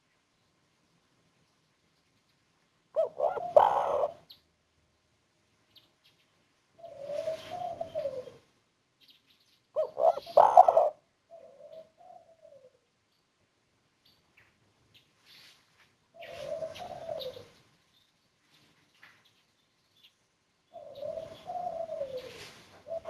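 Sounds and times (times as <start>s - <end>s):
dove cooing: 2.9s - 4.4s, 6.8s - 8.5s, 9.8s - 12.8s, 16.1s - 17.6s, 20.7s - 23.0s.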